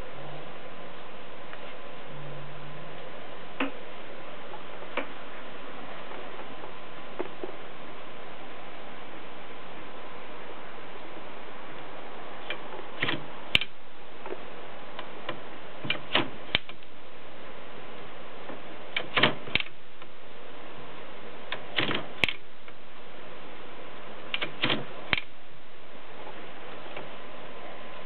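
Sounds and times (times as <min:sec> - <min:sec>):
typewriter clacking: 0:12.5 - 0:13.7, 0:19.0 - 0:19.8, 0:21.6 - 0:22.4, 0:24.3 - 0:25.3.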